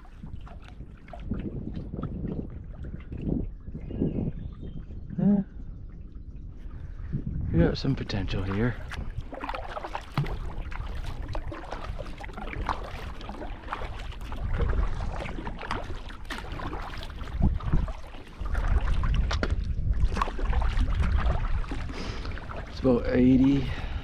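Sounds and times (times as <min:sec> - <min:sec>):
water splashing and dripping: 0:00.0 - 0:03.4, 0:08.3 - 0:24.0
wind buffeting microphone: 0:00.0 - 0:24.0.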